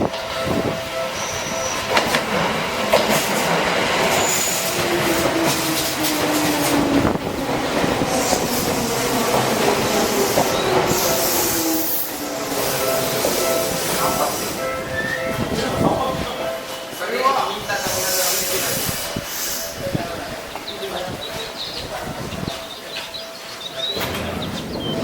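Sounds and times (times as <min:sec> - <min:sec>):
high wheel squeals: 0:01.2 - 0:02.0, 0:04.1 - 0:04.8
train wheels clicking over rail joints: 0:01.4 - 0:14.5, 0:22.6 - 0:25.0.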